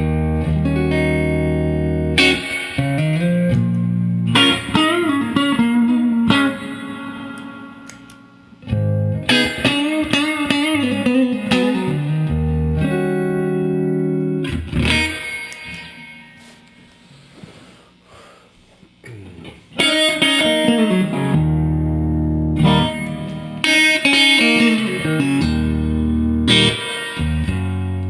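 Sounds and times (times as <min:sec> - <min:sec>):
electric guitar chords and notes: 0:00.0 - 0:17.0, 0:19.3 - 0:28.0.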